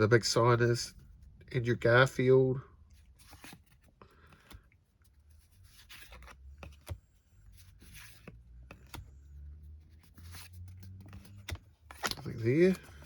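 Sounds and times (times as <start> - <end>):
trading cards rustling and scraping: 2.9 - 13.0.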